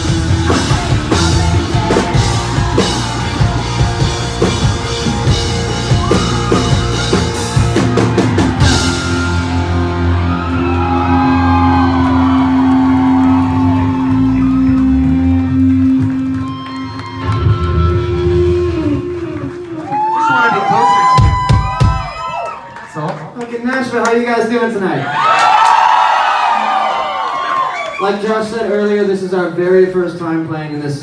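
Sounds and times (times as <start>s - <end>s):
drums and cymbals: 0.0s - 11.3s, 21.0s - 22.2s
electric guitars ringing: 0.0s - 19.6s
rock band playing live: 0.0s - 19.8s.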